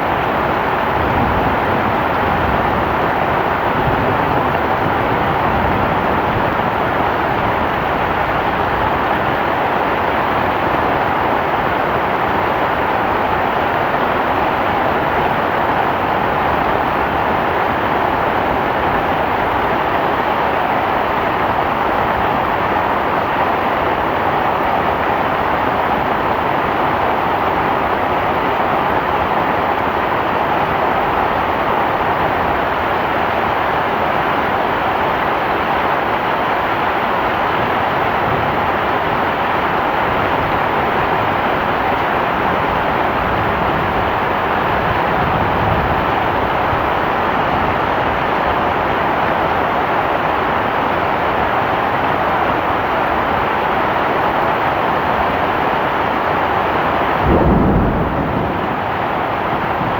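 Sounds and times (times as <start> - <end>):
heavy rain falling: 0.0 - 59.9.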